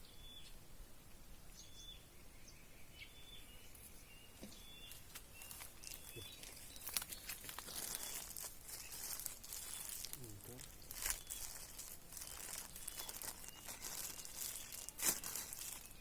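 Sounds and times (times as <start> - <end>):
rustling: 3.8 - 16.0
short high chirping calls: 4.2 - 16.0.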